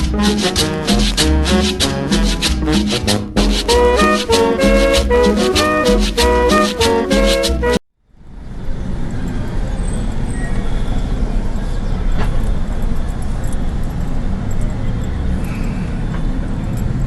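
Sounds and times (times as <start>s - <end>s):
vehicle engine and road noise: 8.1s - 17.0s.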